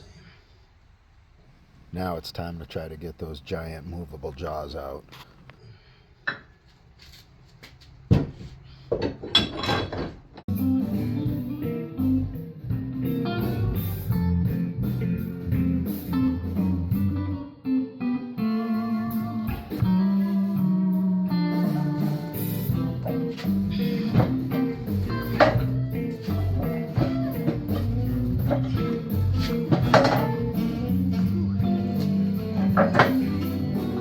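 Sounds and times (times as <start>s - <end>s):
blues guitar music: 10.5s - 34.0s.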